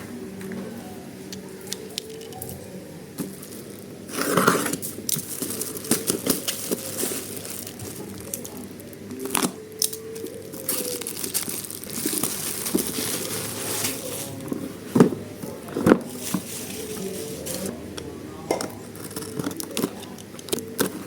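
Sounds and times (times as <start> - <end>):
plastic packaging crinkling: 3.2 - 14.5.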